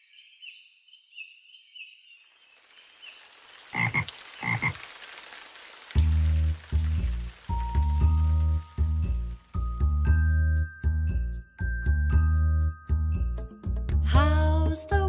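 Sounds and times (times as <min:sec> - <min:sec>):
music with steady beat: 0:07.5 - 0:15.0.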